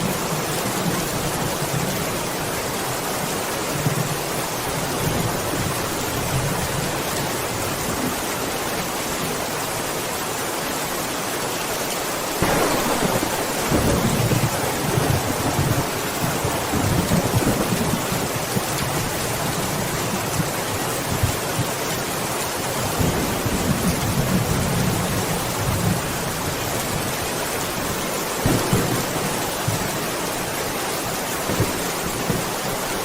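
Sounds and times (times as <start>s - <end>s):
steady rain falling: 0.0s - 33.0s
thunder rumbling: 12.4s - 20.5s, 28.4s - 30.5s.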